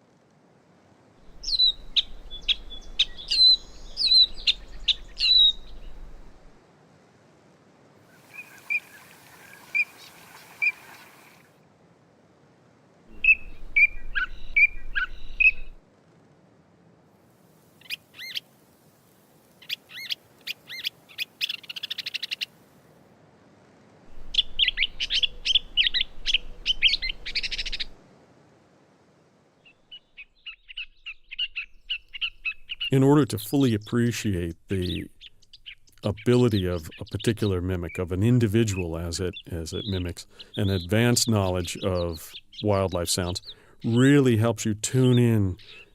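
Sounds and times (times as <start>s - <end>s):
catbird singing: 1.4s - 6.0s, 8.1s - 11.4s, 13.2s - 15.8s, 29.7s - 33.0s, 34.7s - 44.1s.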